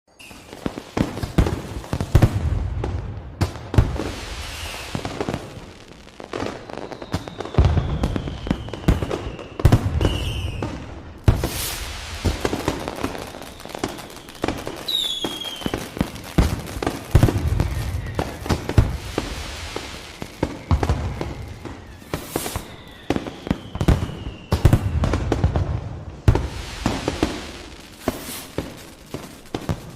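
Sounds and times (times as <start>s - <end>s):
falling whistling tones: 0.1s - 0.8s, 4.3s - 5.6s, 6.2s - 16.0s, 17.3s - 25.3s
fireworks crackling: 0.1s - 29.9s
fireworks booms and cracks: 0.2s - 29.9s.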